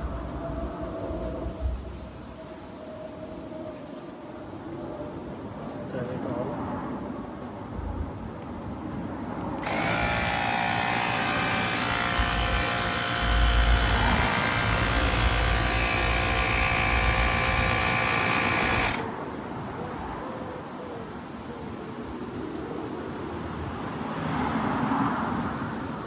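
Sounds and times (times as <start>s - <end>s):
electric pump running: 9.6s - 19.1s.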